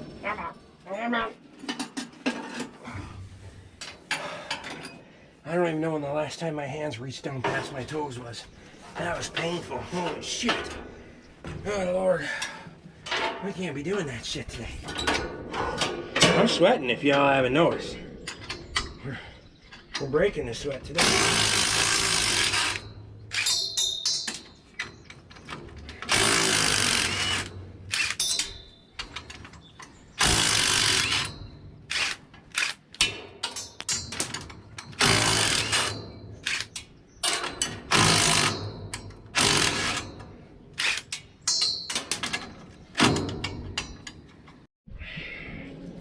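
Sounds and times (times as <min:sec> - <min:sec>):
handheld power tool bursts: 0:21.0 - 0:23.6, 0:25.9 - 0:28.6, 0:30.2 - 0:33.1, 0:35.0 - 0:40.2, 0:40.8 - 0:41.3
clicks and knocks: 0:41.0 - 0:44.7.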